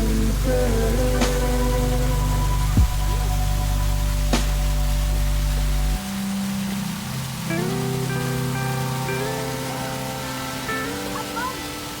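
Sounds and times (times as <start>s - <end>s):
pop music chords and bass: 0.0s - 11.6s
deep falling drum hit: 2.8s - 3.2s
sharp drum hit: 2.8s - 3.2s.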